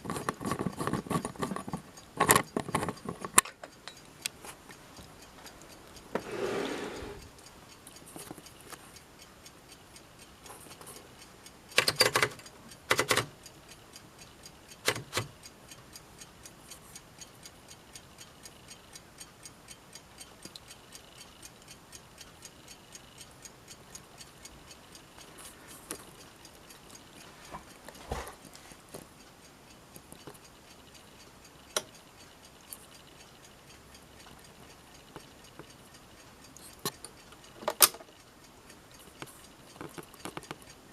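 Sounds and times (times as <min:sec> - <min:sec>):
faint steady ticking: 0:00.0 - 0:40.9
typewriter mechanism clacks: 0:11.7 - 0:13.3, 0:14.8 - 0:15.3.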